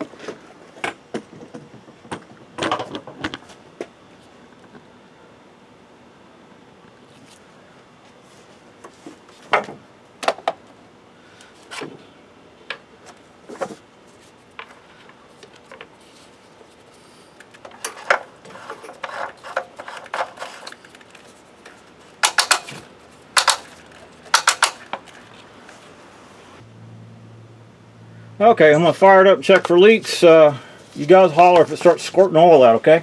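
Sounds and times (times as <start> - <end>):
clatter of tools and parts: 17.4 - 25.4.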